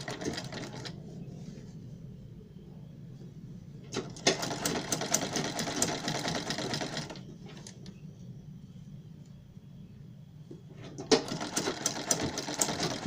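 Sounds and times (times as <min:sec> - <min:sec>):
low steady hum: 0:00.0 - 0:13.0
sewing machine needle clatter: 0:10.8 - 0:13.0.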